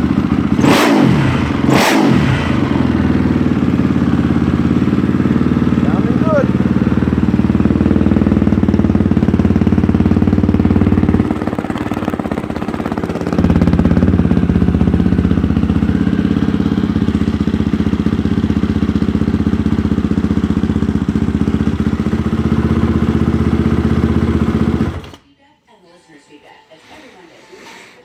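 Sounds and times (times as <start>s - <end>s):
motorcycle engine running: 0.0s - 25.2s.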